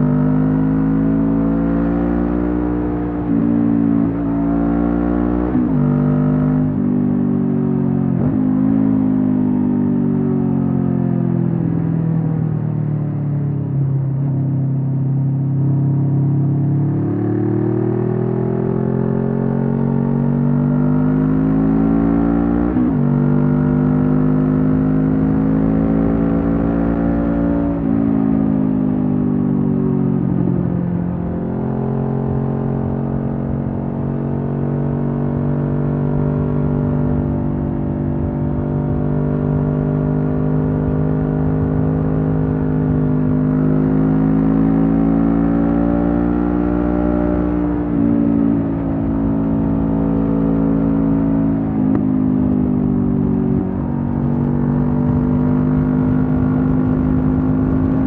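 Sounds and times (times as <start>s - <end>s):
motorcycle engine revving: 15.8s - 58.0s.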